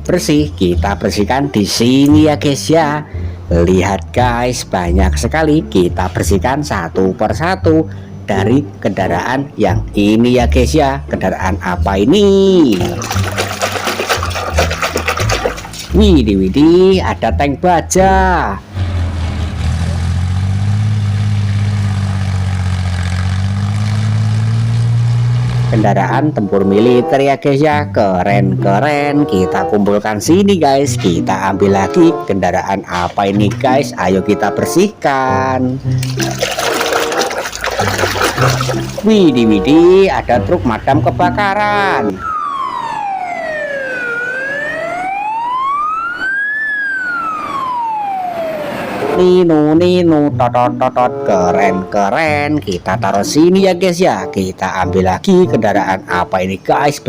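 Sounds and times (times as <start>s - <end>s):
wailing fire engine siren: 42.0s - 49.5s.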